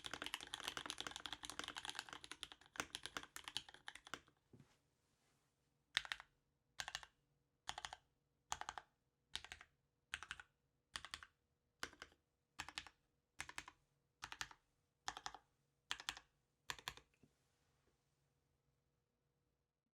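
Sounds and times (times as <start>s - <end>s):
mechanical keyboard typing: 0.0s - 4.3s, 6.0s - 6.2s, 6.8s - 7.1s, 7.7s - 8.8s, 9.4s - 17.1s.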